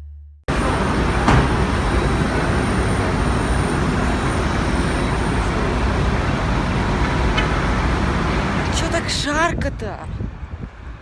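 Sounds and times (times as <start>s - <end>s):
road traffic rumble: 0.5s - 11.0s
short knock: 1.2s - 1.8s.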